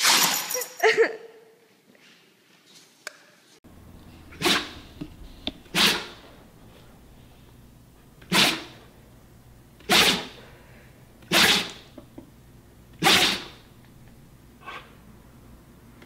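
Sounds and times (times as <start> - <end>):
dog sneezing: 4.3 - 4.8, 5.7 - 6.3, 8.3 - 8.8, 9.8 - 10.4, 11.3 - 11.8, 13.0 - 13.6.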